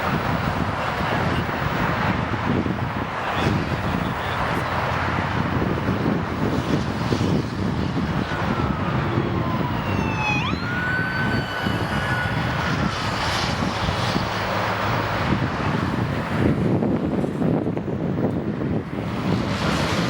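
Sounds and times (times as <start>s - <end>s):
wind buffeting microphone: 0.0s - 20.0s
high falling tone: 8.4s - 13.3s.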